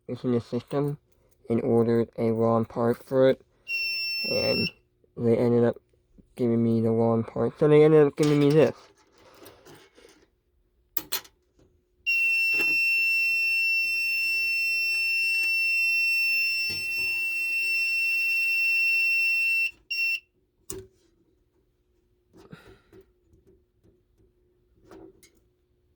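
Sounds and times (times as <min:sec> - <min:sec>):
high-pitched alarm panel beep: 0:03.7 - 0:04.8, 0:12.1 - 0:20.2.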